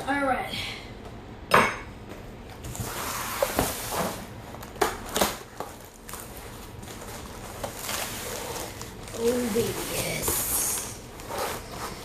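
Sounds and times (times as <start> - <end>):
packaging rustling and crackling: 2.8 - 12.0.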